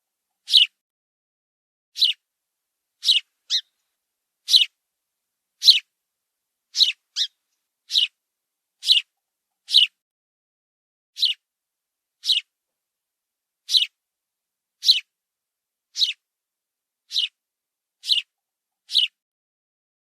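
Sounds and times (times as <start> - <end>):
sparrow chirping: 0.4 - 0.8, 2.0 - 2.2, 3.0 - 3.8, 4.4 - 4.8, 5.6 - 5.9, 6.7 - 8.2, 8.8 - 10.0, 11.2 - 11.4, 12.2 - 12.5, 13.6 - 14.0, 14.8 - 15.1, 15.9 - 16.2, 17.0 - 17.4, 18.0 - 19.2.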